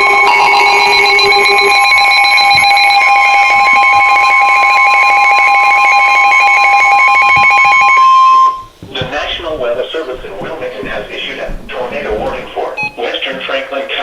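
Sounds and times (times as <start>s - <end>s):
rapidly pulsing electronic beep: 0.0s - 8.7s, 12.7s - 13.1s
loud steady alarm tone: 0.0s - 13.3s.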